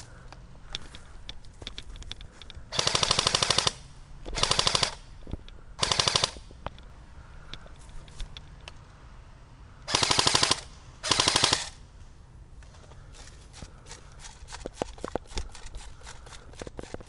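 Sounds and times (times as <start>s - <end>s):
airsoft gun firing bursts: 2.7s - 5.0s, 5.8s - 6.4s, 9.9s - 11.8s.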